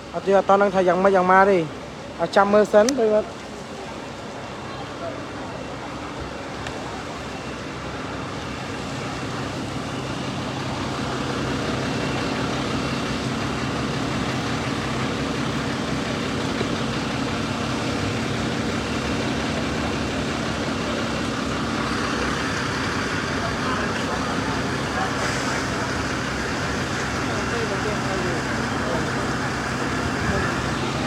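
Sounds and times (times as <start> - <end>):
street noise: 0.0 - 31.0
motor humming: 8.6 - 31.0.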